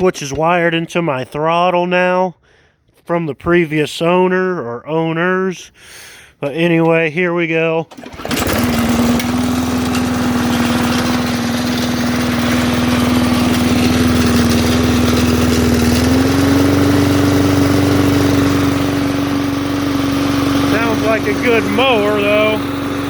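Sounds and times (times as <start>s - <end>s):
lawn mower engine running: 7.9s - 23.0s.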